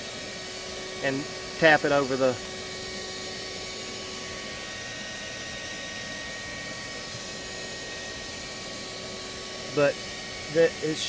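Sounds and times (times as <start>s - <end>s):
loud fan whooshing: 0.0s - 11.0s.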